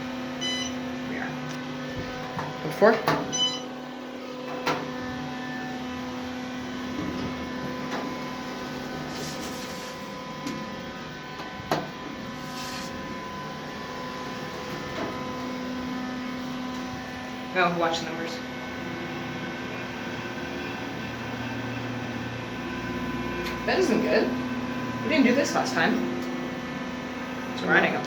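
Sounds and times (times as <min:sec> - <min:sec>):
elevator pump hum: 0:00.0 - 0:28.0.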